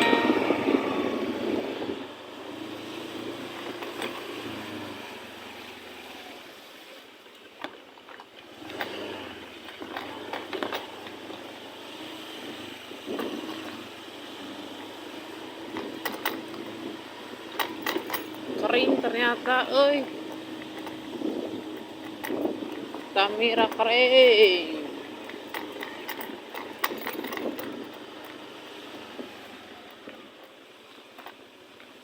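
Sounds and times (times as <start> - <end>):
street traffic rush: 0.0 - 32.0.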